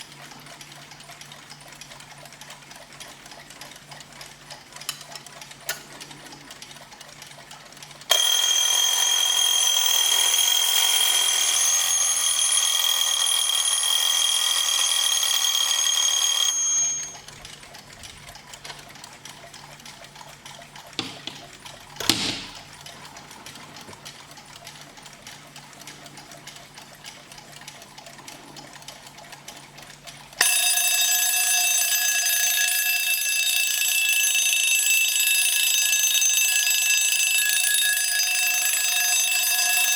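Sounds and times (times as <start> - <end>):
fast mechanical ticking: 0.0 - 30.6
alarm clock bells ringing: 8.1 - 17.3, 30.4 - 39.9
lower-pitched alarm bell: 8.1 - 17.3, 30.4 - 39.9.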